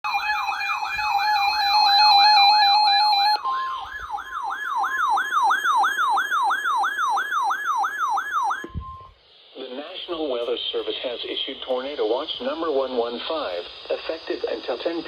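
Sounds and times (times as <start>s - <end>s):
falling electronic alarm sweep: 0.0s - 9.2s.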